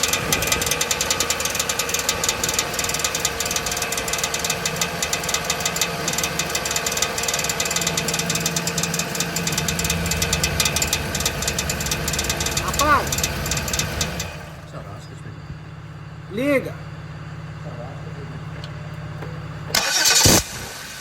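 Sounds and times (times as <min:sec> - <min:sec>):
car engine idling: 0:00.0 - 0:21.0.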